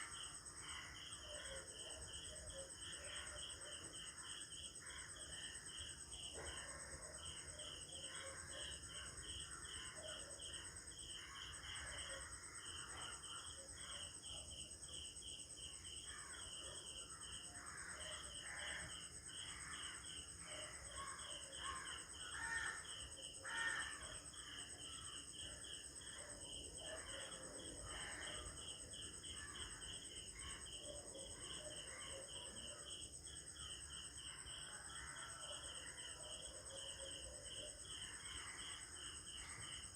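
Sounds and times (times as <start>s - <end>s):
cricket chirps: 0.0s - 39.9s
crows cawing: 22.3s - 22.8s, 23.4s - 24.0s.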